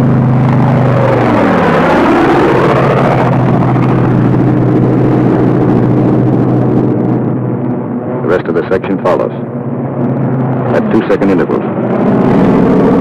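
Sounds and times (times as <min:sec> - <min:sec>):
radial aircraft engine droning: 0:00.0 - 0:13.0.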